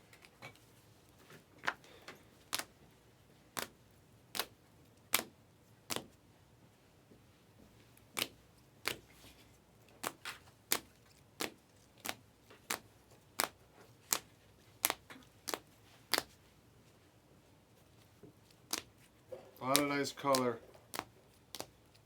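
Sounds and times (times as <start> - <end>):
trading cards snapping down: 19.7 - 21.7.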